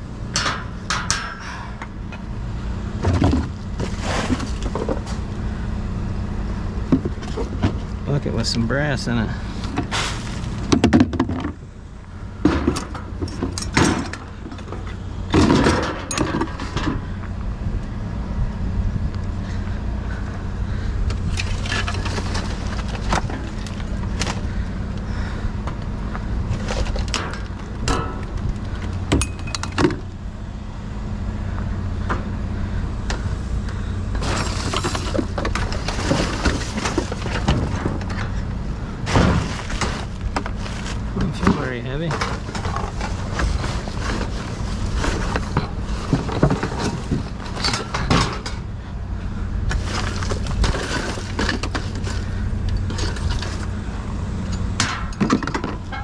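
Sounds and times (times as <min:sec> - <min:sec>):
low engine hum: 0:00.0 - 0:56.0
scrap metal clattering in bucket: 0:03.0 - 0:05.2, 0:09.3 - 0:11.6, 0:12.4 - 0:17.2, 0:21.3 - 0:24.6, 0:34.2 - 0:38.4, 0:39.0 - 0:48.7, 0:49.7 - 0:53.8.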